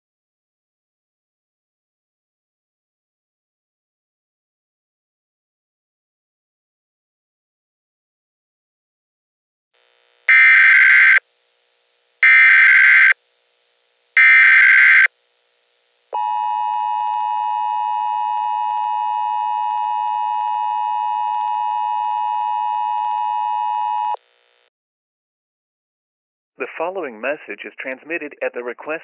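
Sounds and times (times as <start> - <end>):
digital data screech: 10.3 - 11.2, 12.2 - 13.2, 14.2 - 15.1
steady attention tone: 10.3 - 11.2, 13.8 - 24.6.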